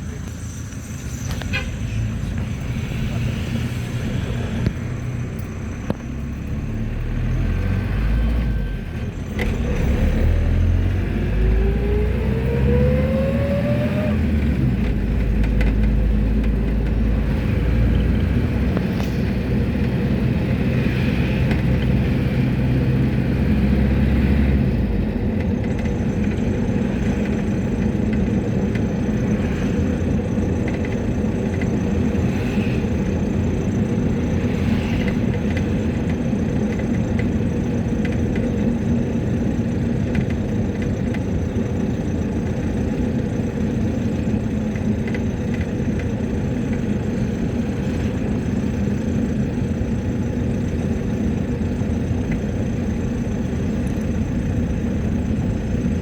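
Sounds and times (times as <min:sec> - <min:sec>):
engine and road rumble: 0:00.0 - 0:56.0
rising whine: 0:02.6 - 0:14.9.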